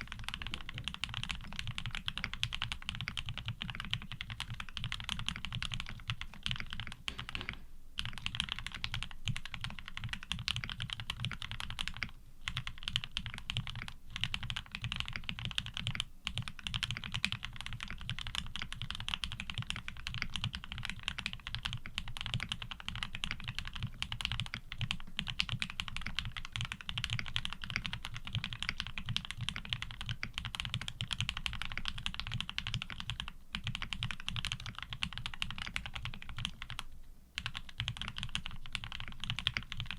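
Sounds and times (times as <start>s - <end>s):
fast mechanical keyboard typing: 0.0s - 39.9s.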